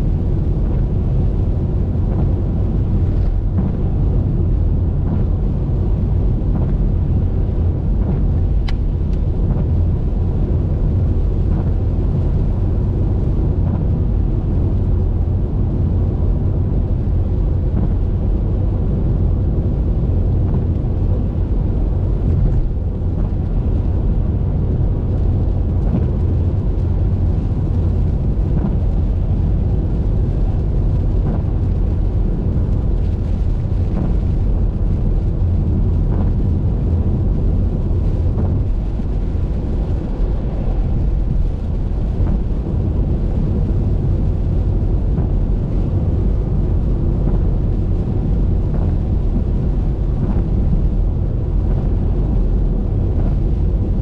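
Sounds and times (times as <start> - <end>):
car driving road noise: 0.0 - 54.0
raindrops ticking on windshield: 0.0 - 54.0.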